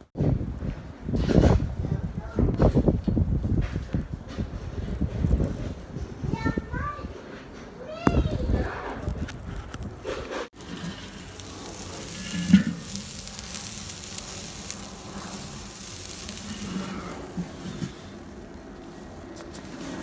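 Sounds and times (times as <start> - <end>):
food sizzling on grill: 10.5 - 20.0.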